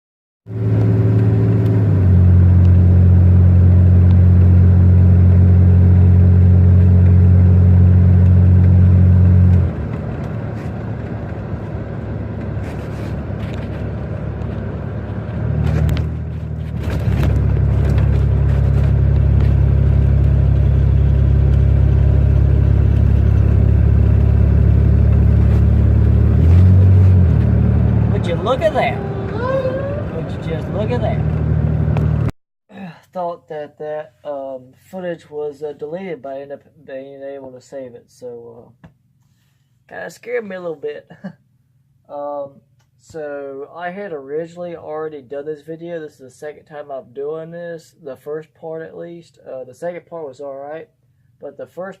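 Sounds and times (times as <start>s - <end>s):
go-kart engine running: 12.4s - 32.2s.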